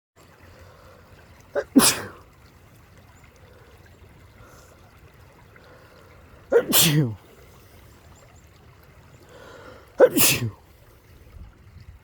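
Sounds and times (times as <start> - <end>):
person sneezing: 1.6 - 2.2, 6.5 - 7.2, 10.0 - 10.6.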